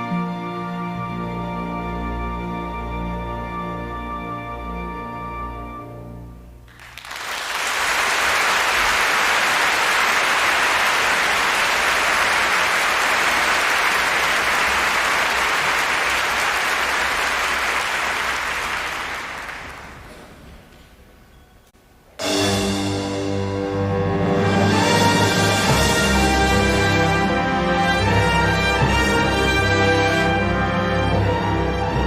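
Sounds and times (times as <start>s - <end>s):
audience applauding: 6.7s - 20.4s.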